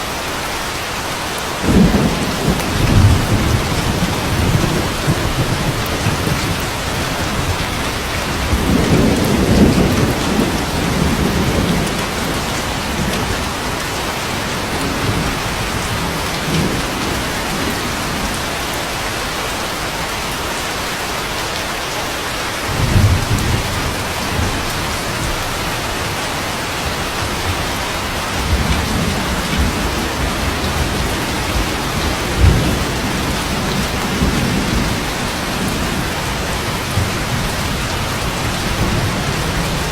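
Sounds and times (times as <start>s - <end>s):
steady rain: 0.0s - 39.9s
thunder rolling: 1.6s - 18.5s, 22.7s - 39.9s.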